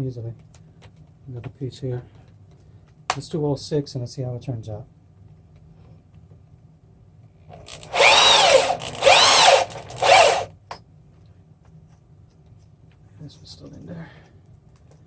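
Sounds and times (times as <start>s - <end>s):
power drill whining: 7.5s - 10.5s.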